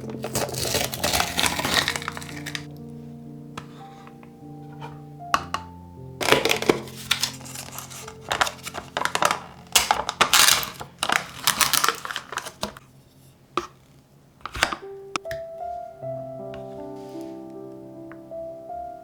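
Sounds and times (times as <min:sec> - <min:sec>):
kitchen utensils scraping and clattering: 0:00.0 - 0:02.7, 0:06.2 - 0:12.8
faint soft music: 0:00.0 - 0:19.0.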